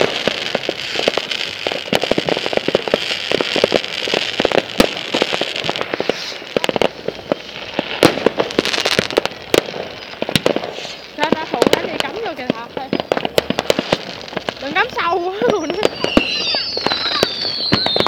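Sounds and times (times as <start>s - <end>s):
steady hiss: 0.0s - 7.6s
fireworks crackling pops: 0.0s - 18.0s.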